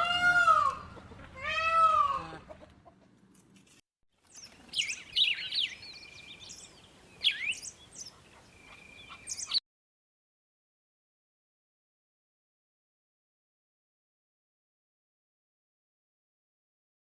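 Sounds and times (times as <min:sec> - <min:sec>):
bird chirping and trilling: 0:04.3 - 0:09.6.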